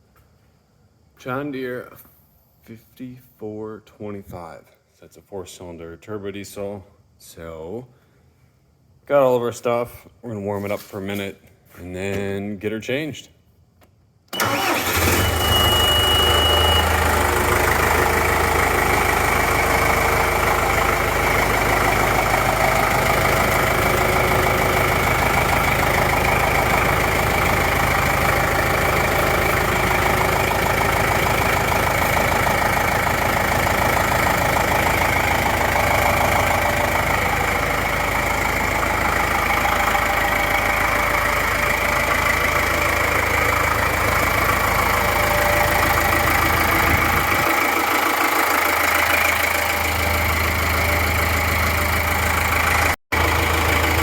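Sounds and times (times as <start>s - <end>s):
diesel tractor engine idling: 14.3s - 54.0s.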